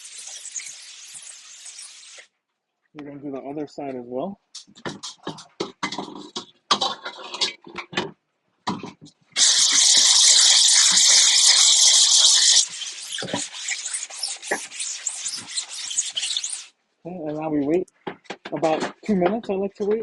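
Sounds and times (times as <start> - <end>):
rapid rubbing strokes: 0.0 - 2.3, 9.4 - 16.7
spray hissing: 0.0 - 2.3, 9.4 - 16.7.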